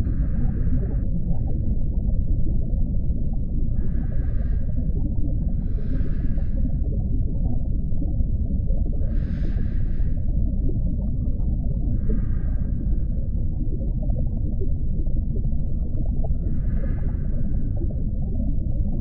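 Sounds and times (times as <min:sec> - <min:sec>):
low underwater rumble: 0:00.0 - 0:19.0
scuba regulator breaths: 0:03.8 - 0:04.9, 0:05.5 - 0:06.9, 0:09.0 - 0:10.3, 0:12.0 - 0:13.2.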